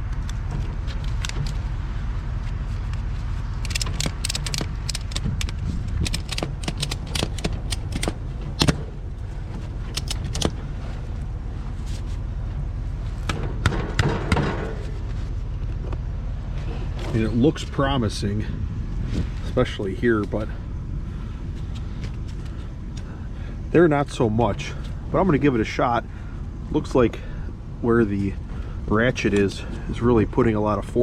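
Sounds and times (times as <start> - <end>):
tractor engine idling: 0.0 - 18.9
metal ratchet clicks: 3.6 - 8.8, 9.9 - 10.5.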